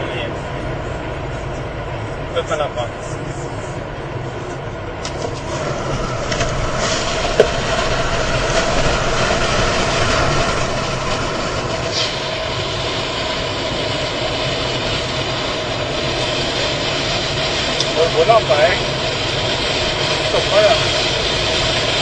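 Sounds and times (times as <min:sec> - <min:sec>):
car cabin road roar: 0:00.0 - 0:22.0.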